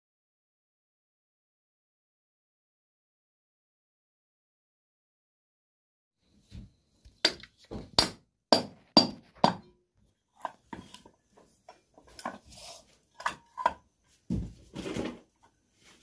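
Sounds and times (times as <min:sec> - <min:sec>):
tools knocking on metal: 0:07.2 - 0:09.8.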